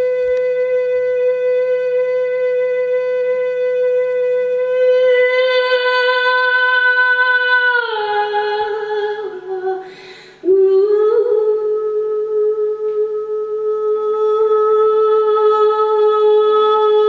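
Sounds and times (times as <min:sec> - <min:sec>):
woman singing unaccompanied: 0:00.0 - 0:17.0
woman breathing in: 0:09.8 - 0:10.4.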